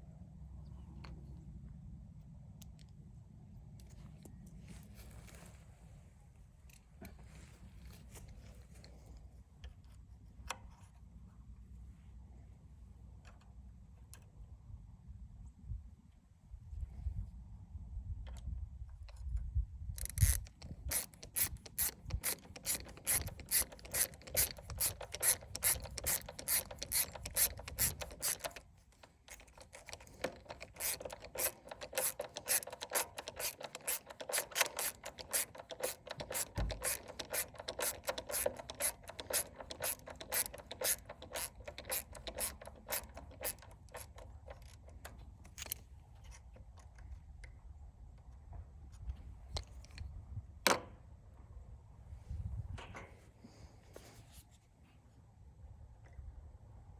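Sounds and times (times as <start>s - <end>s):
ratcheting screwdriver clicking: 20.0s - 45.8s.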